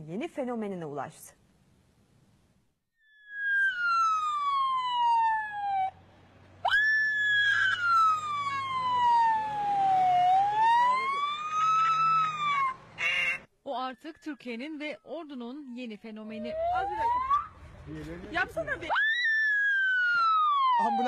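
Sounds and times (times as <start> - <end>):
boy imitating a siren: 6.7 - 12.8, 16.3 - 17.6, 18.9 - 21.0.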